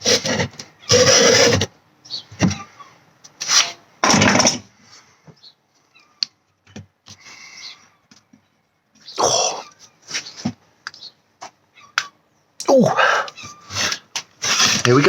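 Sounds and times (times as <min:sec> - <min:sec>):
tool rasping golf ball cover: 0:00.0 - 0:01.7, 0:13.7 - 0:15.0.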